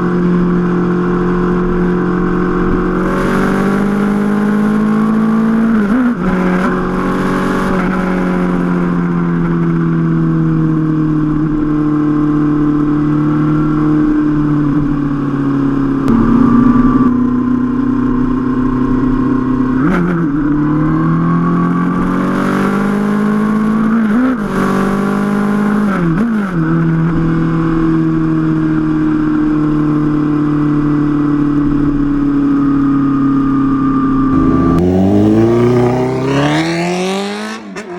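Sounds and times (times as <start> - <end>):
motorcycle engine revving: 34.3 - 37.9.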